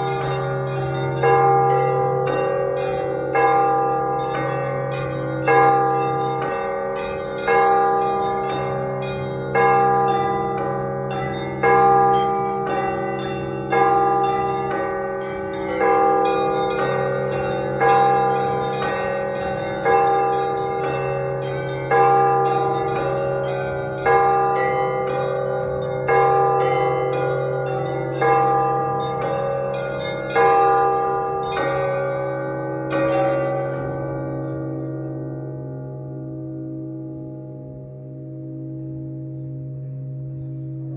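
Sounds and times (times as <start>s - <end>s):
church bells pealing: 0.0s - 40.9s.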